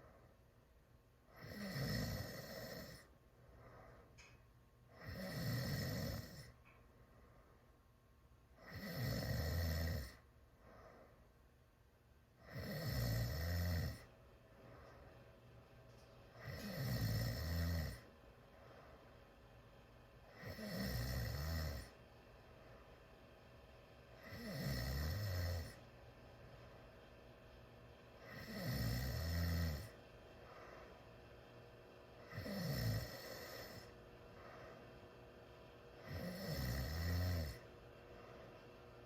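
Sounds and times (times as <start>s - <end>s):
person snoring loudly: 1.3s - 3.1s, 5.0s - 6.5s, 8.6s - 10.2s, 12.4s - 14.1s, 16.4s - 18.0s, 20.3s - 22.0s, 24.2s - 25.8s, 28.2s - 30.0s, 32.2s - 33.9s, 36.0s - 37.6s.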